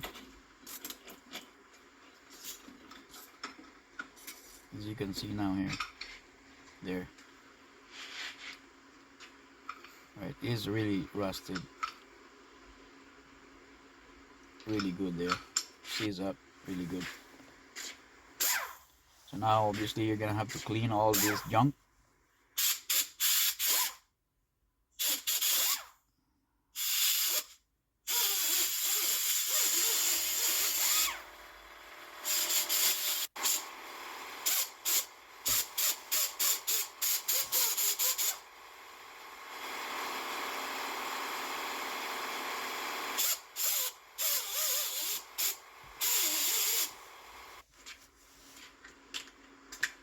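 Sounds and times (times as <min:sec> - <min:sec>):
hissing cleaning tool bursts: 0:22.6 - 0:24.0, 0:25.0 - 0:25.9, 0:26.8 - 0:31.3, 0:32.2 - 0:47.6.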